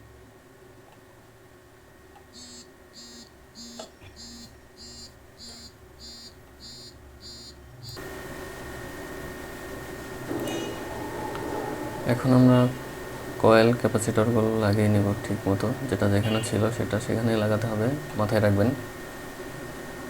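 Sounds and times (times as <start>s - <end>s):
short electronic beeps: 2.4s - 8.0s
steady hiss: 8.0s - 20.0s.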